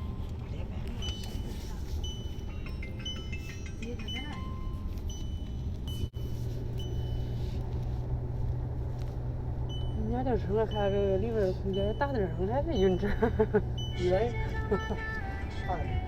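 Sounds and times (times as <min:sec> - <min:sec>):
car engine and road hum: 0:00.0 - 0:16.0
high electronic warning beep: 0:09.7 - 0:15.2.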